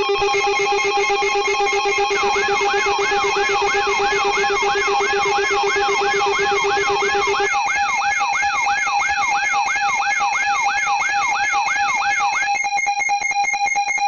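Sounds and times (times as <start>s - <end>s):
steady electronic tones: 0.0s - 7.7s
rapid pulsing tone: 0.0s - 7.9s
electronic yelp siren: 0.0s - 14.0s.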